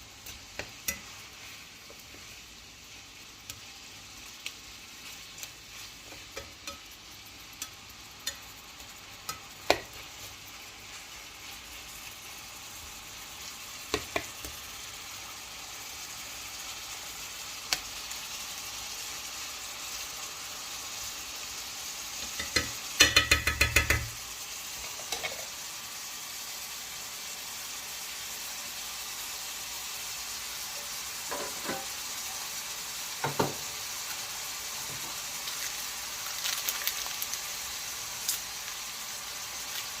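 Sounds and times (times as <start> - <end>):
food sizzling in a pot: 0.0 - 40.0
spoon stirring and knocking pot: 6.0 - 6.8, 9.2 - 10.0, 13.9 - 14.6, 22.2 - 24.2.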